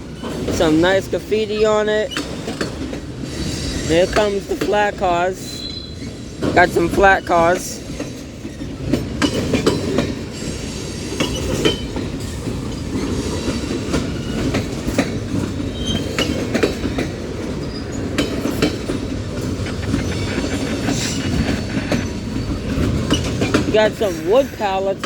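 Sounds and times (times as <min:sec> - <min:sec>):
clacks over rail joints: 0:00.0 - 0:25.0
train wheels rumbling on rails: 0:00.0 - 0:25.0
high wheel squeals: 0:05.3 - 0:08.0, 0:15.6 - 0:16.7, 0:17.6 - 0:25.0.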